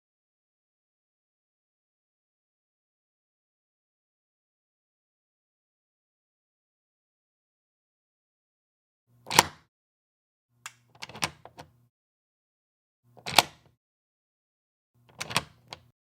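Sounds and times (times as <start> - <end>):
door lock clicks: 9.2 - 9.7, 10.7 - 11.8, 13.2 - 13.8, 15.1 - 15.9
door lock clack: 9.3 - 9.7, 10.7 - 11.8, 13.2 - 13.7, 15.1 - 15.9.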